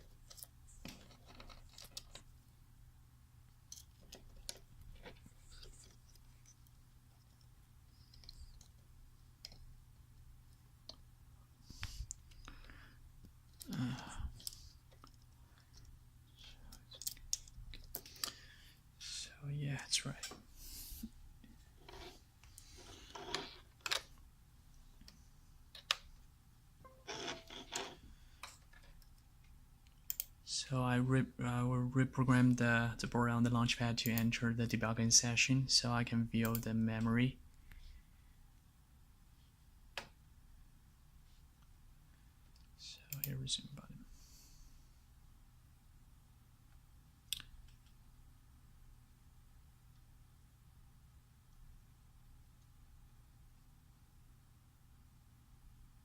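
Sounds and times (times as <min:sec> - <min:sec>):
small clicks and handling noises: 0:00.0 - 0:02.4, 0:03.7 - 0:11.1, 0:11.7 - 0:18.4, 0:21.4 - 0:24.2, 0:25.0 - 0:26.3, 0:27.1 - 0:30.4
low steady hum: 0:00.0 - 0:56.0.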